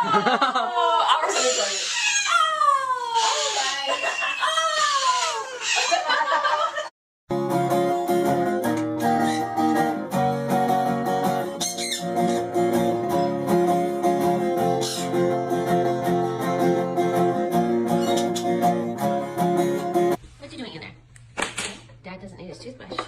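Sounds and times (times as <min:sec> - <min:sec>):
strummed acoustic guitar music: 0:07.3 - 0:20.2.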